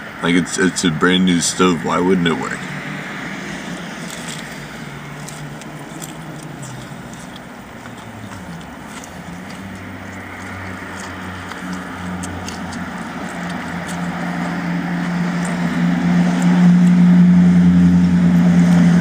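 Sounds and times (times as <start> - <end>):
vehicle engine hum: 0.0 - 19.0
clicks and rustles of handling: 4.0 - 14.6.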